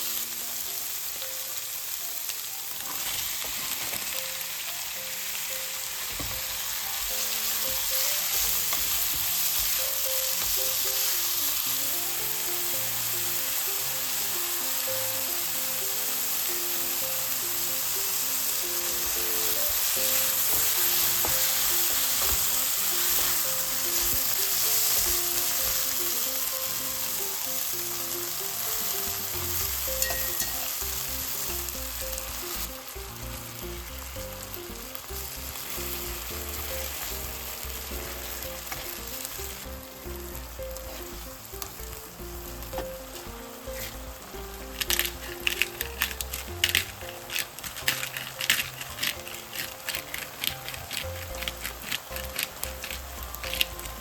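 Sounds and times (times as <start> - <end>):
food sizzling in a pan: 0.0 - 54.0
soft background melody: 0.0 - 54.0
stirring in a pan: 44.7 - 54.0.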